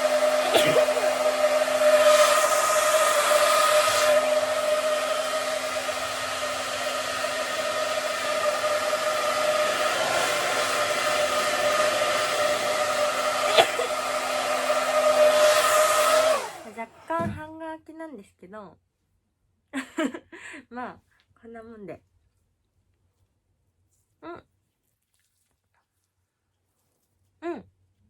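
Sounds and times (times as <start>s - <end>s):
hair dryer running: 0.0s - 17.5s.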